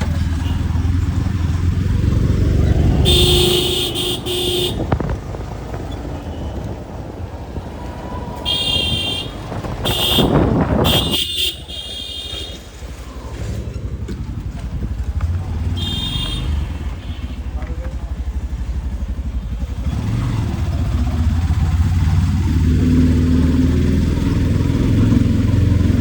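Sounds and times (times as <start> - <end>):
road traffic engines: 0.0 - 26.0
vehicle horns honking: 2.9 - 5.2, 6.2 - 6.7, 8.4 - 12.8, 15.6 - 17.6.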